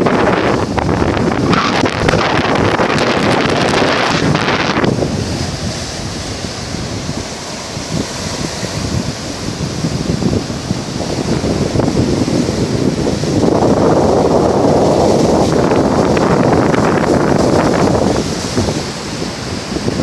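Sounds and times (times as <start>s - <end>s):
sea surf washing in: 0.0s - 20.0s
wind buffeting microphone: 0.0s - 20.0s.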